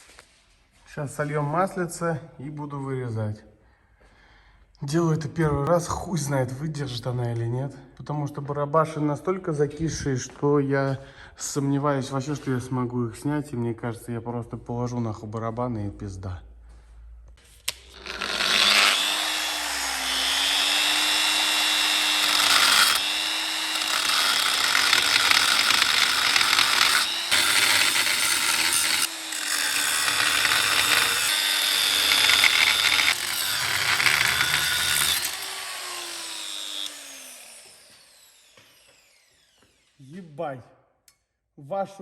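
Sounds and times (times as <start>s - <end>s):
angle grinder cutting steel: 17.6s - 40.0s.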